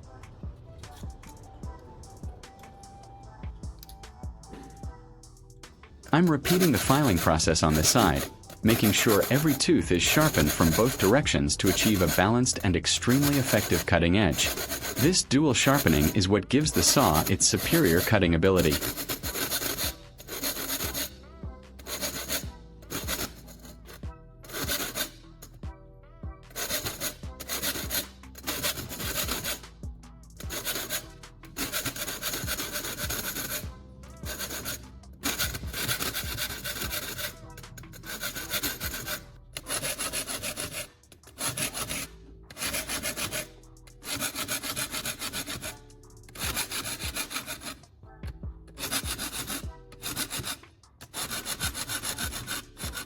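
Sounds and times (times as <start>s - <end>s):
metal file rasping on saw teeth: 5.7s - 25.6s, 26.4s - 48.0s, 48.7s - 53.0s.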